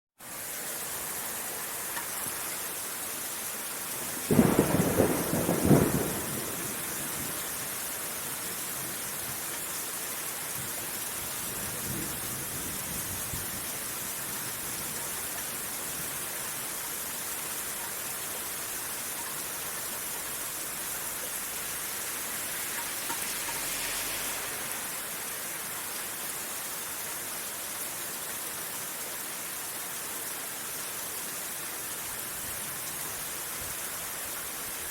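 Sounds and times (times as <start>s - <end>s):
steady rain falling: 0.2s - 34.9s
thunder clap and rumble: 4.3s - 7.5s.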